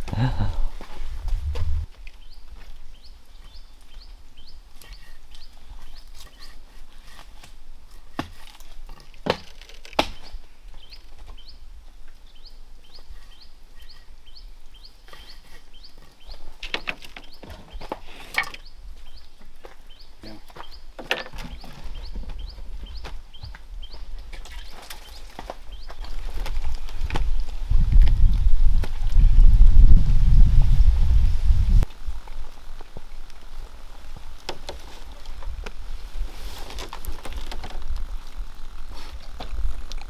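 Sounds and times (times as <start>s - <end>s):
footsteps crunching dry leaves: 24.0s - 40.0s.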